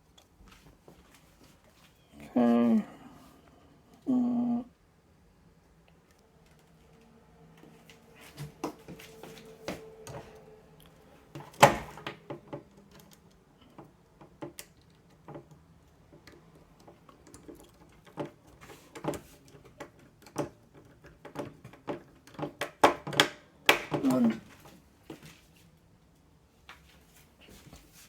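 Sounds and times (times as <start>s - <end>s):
faint steady hum: 0.0s - 20.8s
hard drive parts clicking and knocking: 11.3s - 24.2s.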